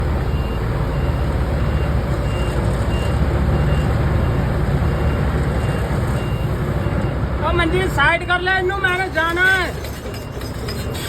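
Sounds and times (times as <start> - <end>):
diesel engine rumbling: 0.0 - 11.0
reversing alarm beeps: 0.3 - 8.4.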